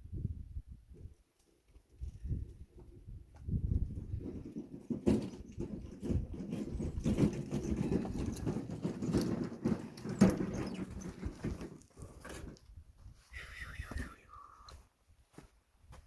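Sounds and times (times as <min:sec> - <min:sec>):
wooden logs knocking: 0:04.2 - 0:11.8.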